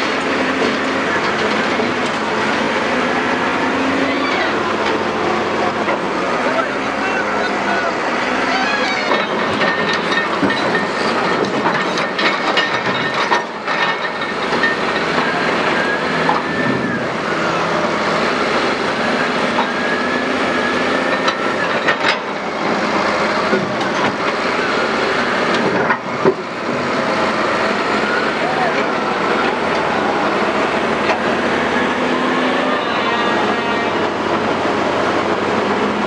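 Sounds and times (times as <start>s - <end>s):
heavy machinery din: 0.0s - 36.0s
clanks and knocks: 9.0s - 16.9s, 21.0s - 22.5s, 23.4s - 24.4s, 25.5s - 26.9s.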